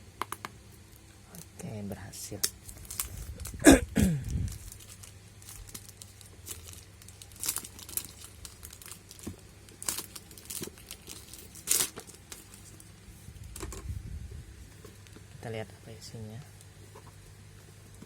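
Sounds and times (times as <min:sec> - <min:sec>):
packaging crinkling: 0:02.4 - 0:13.8.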